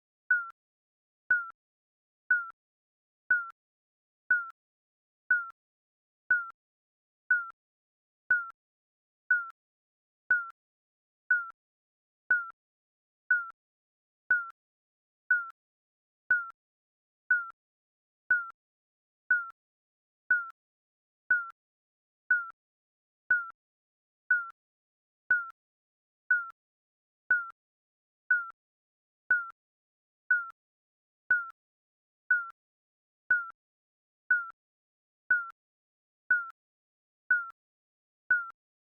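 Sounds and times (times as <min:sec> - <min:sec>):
timer beeping: 0:00.3 - 0:00.6, 0:01.3 - 0:01.5, 0:02.3 - 0:02.6, 0:03.3 - 0:03.6, 0:04.3 - 0:04.6, 0:05.3 - 0:05.6, 0:06.3 - 0:06.5, 0:07.3 - 0:07.5, 0:08.3 - 0:08.5, 0:09.3 - 0:09.5, 0:10.3 - 0:10.5, 0:11.3 - 0:11.5, 0:12.3 - 0:12.5, 0:13.3 - 0:13.5, 0:14.3 - 0:14.5, 0:15.3 - 0:15.5, 0:16.3 - 0:16.5, 0:17.3 - 0:17.6, 0:18.3 - 0:18.5, 0:19.3 - 0:19.6, 0:20.3 - 0:20.5, 0:21.3 - 0:21.5, 0:22.3 - 0:22.6, 0:23.3 - 0:23.5, 0:24.3 - 0:24.5, 0:25.3 - 0:25.5, 0:26.3 - 0:26.5, 0:27.3 - 0:27.5, 0:28.3 - 0:28.6, 0:29.3 - 0:29.6, 0:30.3 - 0:30.6, 0:31.3 - 0:31.6, 0:32.3 - 0:32.6, 0:33.3 - 0:33.6, 0:34.3 - 0:34.6, 0:35.3 - 0:35.6, 0:36.3 - 0:36.6, 0:37.3 - 0:37.6, 0:38.3 - 0:38.5.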